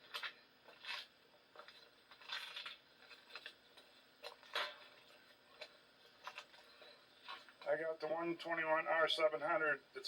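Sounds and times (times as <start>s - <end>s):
faint clicks and rustles: 0.0s - 7.8s.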